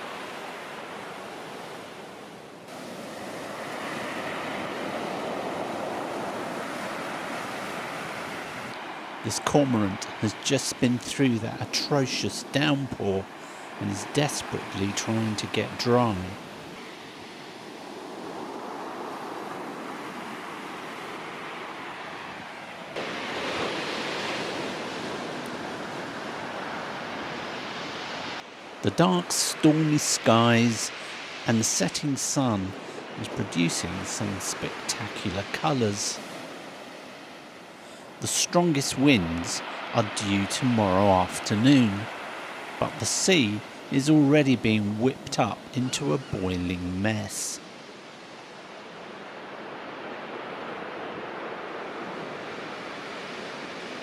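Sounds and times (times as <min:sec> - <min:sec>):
stormy sea waves breaking: 0:00.0 - 0:54.0
wind: 0:00.0 - 0:54.0.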